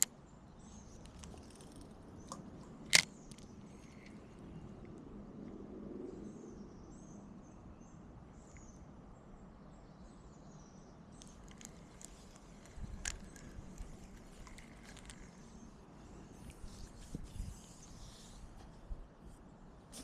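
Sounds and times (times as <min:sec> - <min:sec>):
small bird chirping: 0:00.0 - 0:04.9, 0:09.8 - 0:18.7
faint outdoor background noise: 0:00.0 - 0:20.0
scattered clicks: 0:11.2 - 0:15.4.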